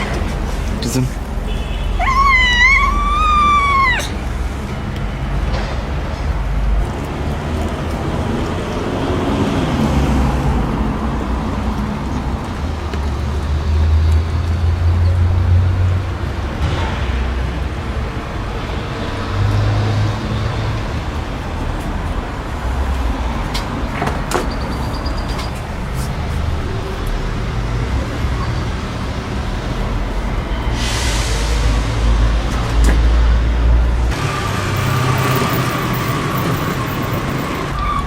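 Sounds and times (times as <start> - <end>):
road traffic rumble: 0.0 - 38.0.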